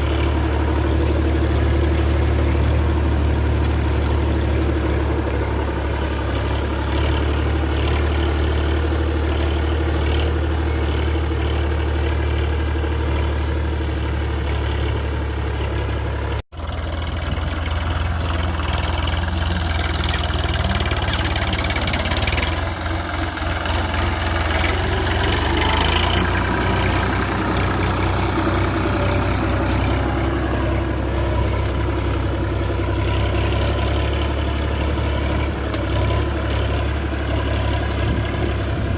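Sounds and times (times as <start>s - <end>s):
diesel tractor engine running: 0.0s - 38.9s.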